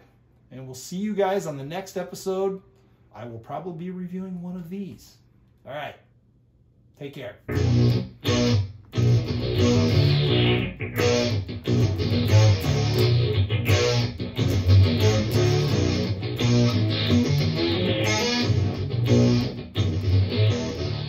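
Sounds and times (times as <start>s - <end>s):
bass line: 7.5s - 21.0s
electric guitar chords: 7.5s - 21.0s.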